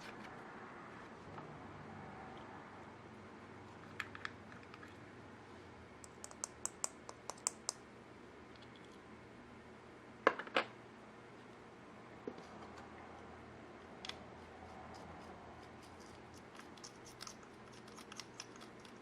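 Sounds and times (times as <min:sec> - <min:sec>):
sharp clicks and taps: 0:06.0 - 0:07.8.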